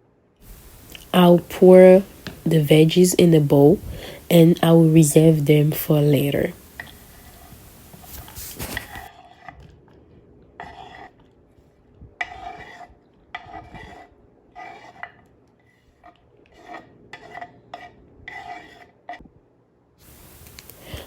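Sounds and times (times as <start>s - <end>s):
knife scraping across cutting board: 6.5s - 9.6s, 10.6s - 11.2s, 12.2s - 19.0s.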